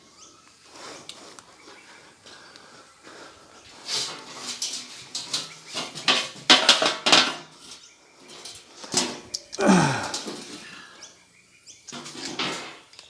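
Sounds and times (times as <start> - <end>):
hard objects clattering: 3.7 - 11.0, 11.9 - 13.0.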